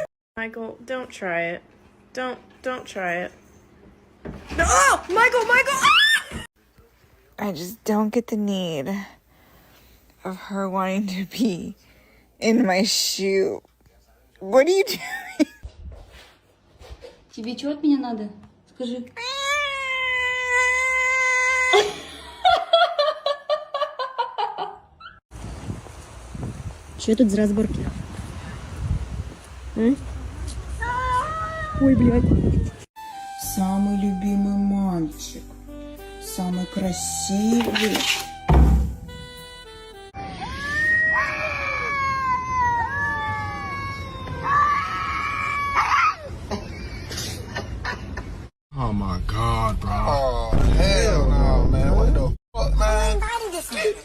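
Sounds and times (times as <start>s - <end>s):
cat yowling: 40.4s - 46.3s.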